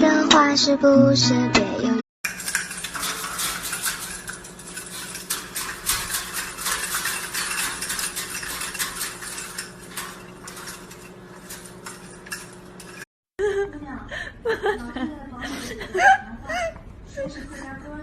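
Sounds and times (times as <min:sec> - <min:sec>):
small hard objects clattering: 0:02.2 - 0:13.1.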